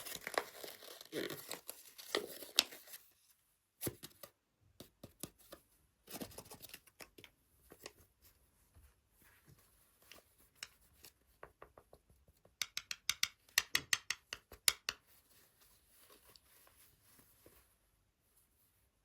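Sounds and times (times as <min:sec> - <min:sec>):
soft scratching and rustling: 0:05.4 - 0:11.4, 0:15.2 - 0:19.0.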